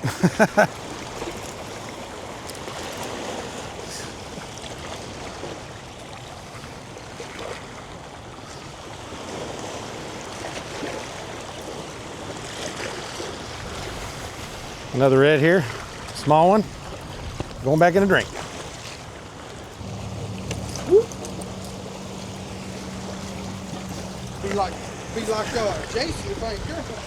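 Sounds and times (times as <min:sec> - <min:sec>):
small waves lapping shoreline: 0:00.0 - 0:27.0.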